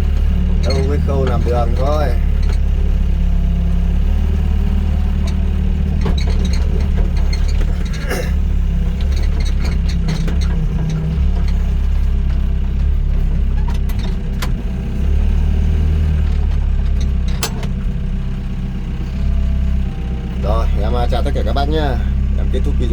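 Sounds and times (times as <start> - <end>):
excavator diesel engine running: 0.0 - 22.9
knocks and clanks: 5.0 - 14.7, 16.2 - 17.9.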